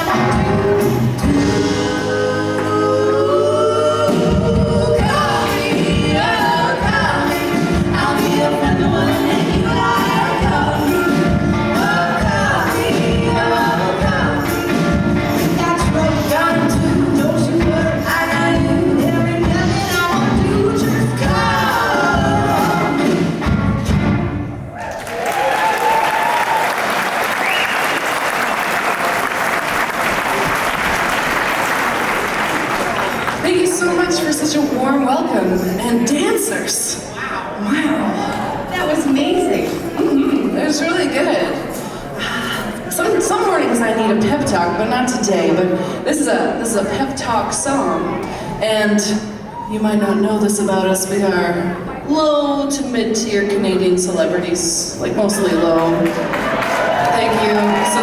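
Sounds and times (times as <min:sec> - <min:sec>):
women singing in harmony: 0:00.0 - 0:23.3
instrumental backing music: 0:00.0 - 0:24.7
audience cheering: 0:24.7 - 0:33.5, 0:55.8 - 0:58.0
audience applauding: 0:24.8 - 0:33.7, 0:55.8 - 0:58.0.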